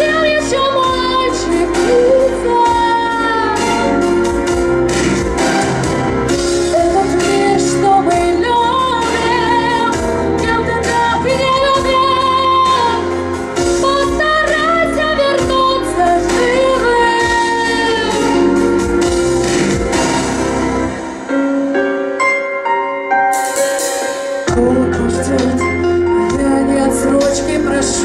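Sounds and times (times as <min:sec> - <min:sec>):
woman singing with vibrato: 0:00.0 - 0:04.0, 0:06.7 - 0:18.9, 0:24.5 - 0:28.0
instrumental accompaniment: 0:00.0 - 0:28.0.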